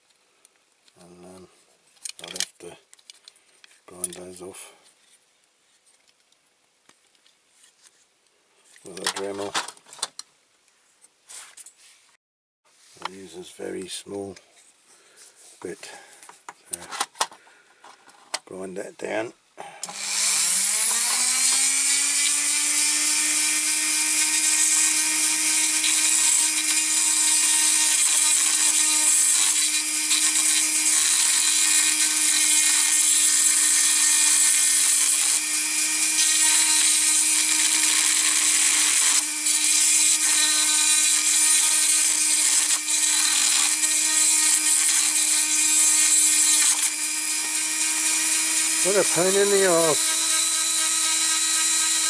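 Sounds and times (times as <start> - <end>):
rotary tool grinding metal: 19.8 - 52.0.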